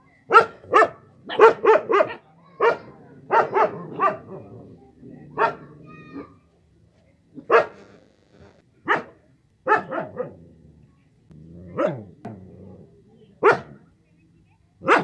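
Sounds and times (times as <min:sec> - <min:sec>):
dog barking: 0:00.3 - 0:04.5, 0:05.4 - 0:05.7, 0:07.4 - 0:07.8, 0:08.8 - 0:10.3, 0:11.8 - 0:12.1, 0:13.4 - 0:13.8.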